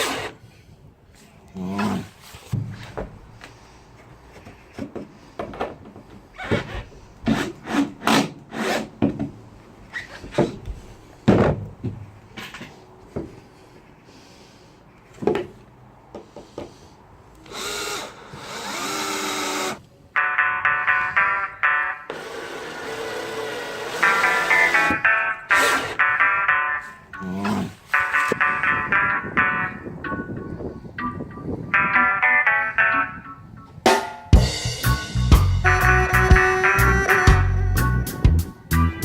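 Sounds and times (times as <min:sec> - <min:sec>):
power drill driving screws: 0:00.0 - 0:00.4, 0:17.4 - 0:19.8, 0:22.1 - 0:26.0.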